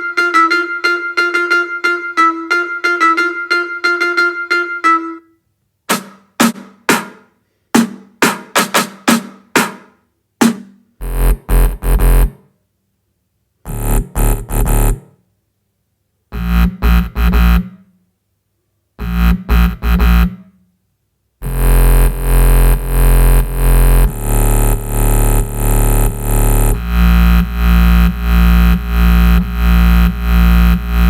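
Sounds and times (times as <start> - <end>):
electronic drum-machine music: 10.4 - 12.4, 13.7 - 15.1, 16.4 - 17.6, 19.0 - 20.3.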